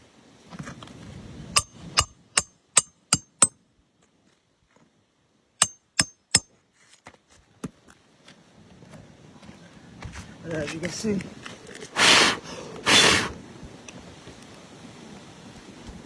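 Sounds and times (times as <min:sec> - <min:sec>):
hammer striking nail: 0:01.6 - 0:03.6, 0:05.6 - 0:06.5.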